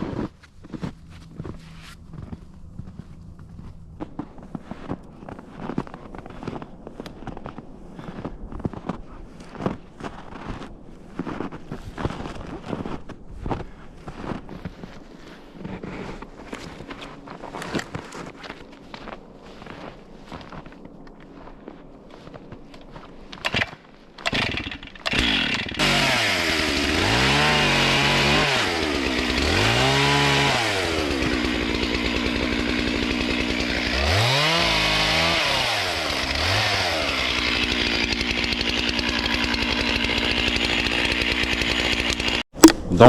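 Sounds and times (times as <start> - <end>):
chainsaw revving: 23.5 - 42.5.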